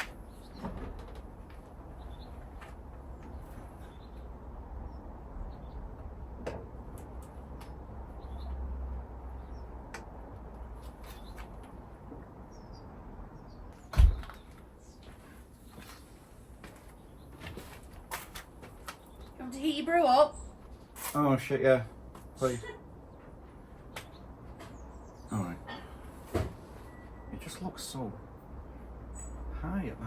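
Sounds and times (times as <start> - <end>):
faint bird chirps: 26.8 - 27.6.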